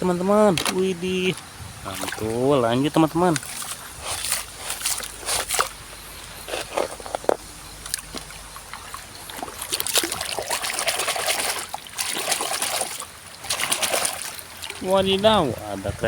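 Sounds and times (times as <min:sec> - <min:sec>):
water sloshing and trickling: 0:00.0 - 0:16.0.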